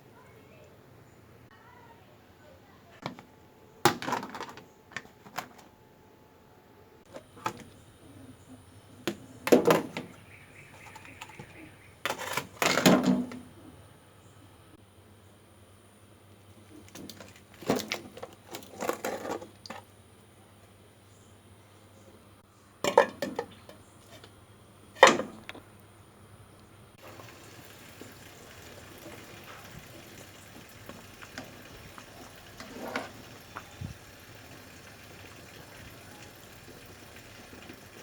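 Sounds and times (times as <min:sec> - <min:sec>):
liquid hissing in a pan: 0:27.0 - 0:38.0
utensils clattering against pots: 0:28.9 - 0:33.6.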